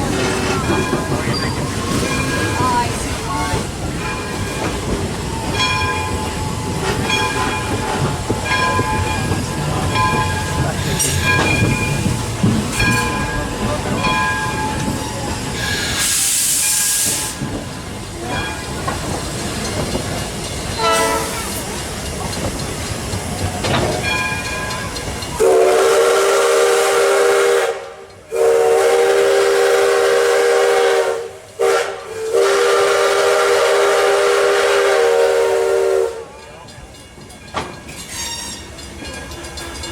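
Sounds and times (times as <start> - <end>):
steam train running: 0.0 - 39.9
hiss of steam: 15.0 - 17.8
steam whistle blasts: 20.8 - 21.6, 25.4 - 36.3.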